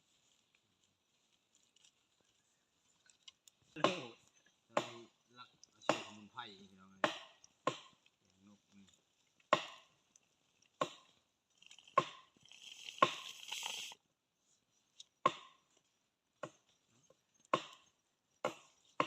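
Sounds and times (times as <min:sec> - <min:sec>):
blade chopping on wooden block: 0:07.0 - 0:07.9, 0:09.5 - 0:09.8.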